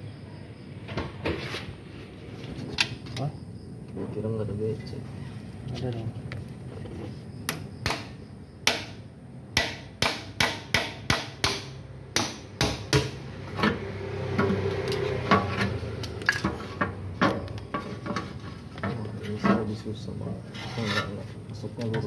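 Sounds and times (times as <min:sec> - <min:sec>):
tool scraping: 0:13.5 - 0:22.0.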